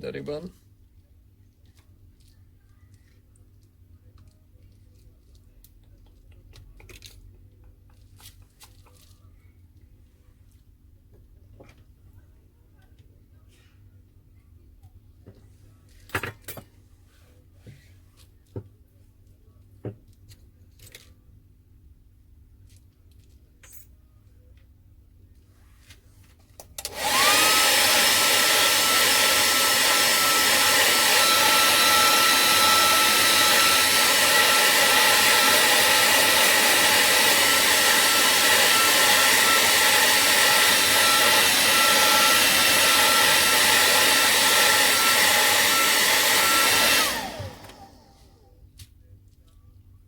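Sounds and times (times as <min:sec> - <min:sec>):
hot-air blower whine: 0:26.8 - 0:48.5.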